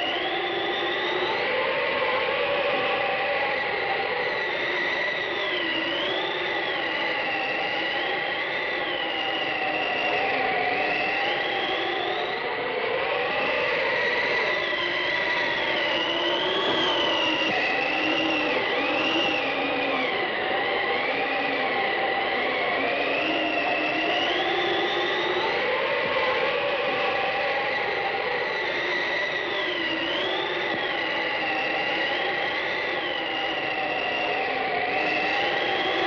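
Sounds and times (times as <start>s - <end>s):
rushing whoosh with whistling tones: 0.0s - 36.0s.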